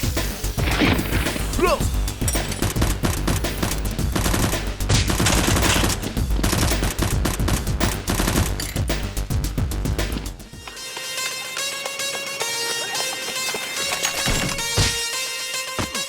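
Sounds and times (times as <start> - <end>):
background music: 0.0 - 16.0
rapid gunfire: 2.4 - 8.7.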